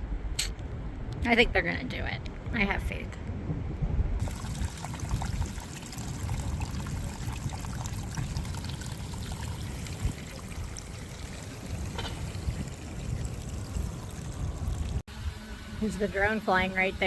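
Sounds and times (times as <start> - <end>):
water pouring down hillside: 4.2 - 15.0.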